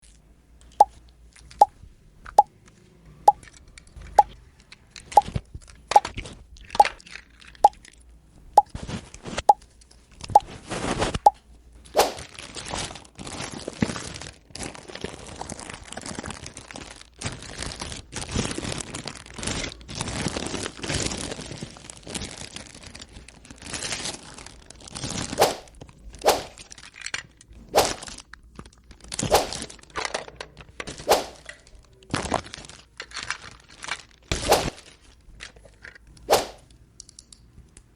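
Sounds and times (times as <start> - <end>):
packaging crinkling: 32.1 - 35.6
sharp clicks of toy pieces: 35.4 - 37.9.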